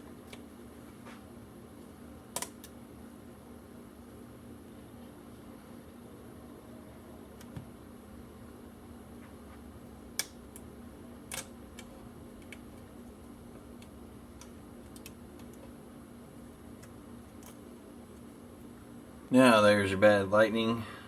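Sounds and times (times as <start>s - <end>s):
faint steady hum: 0.0s - 21.0s.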